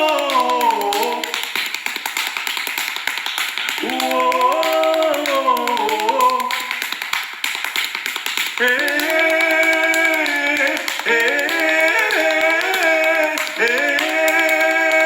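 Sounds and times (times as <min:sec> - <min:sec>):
person singing wordlessly: 0:00.0 - 0:01.6, 0:03.7 - 0:07.0, 0:08.5 - 0:15.0
rapid sharp taps: 0:00.0 - 0:15.0.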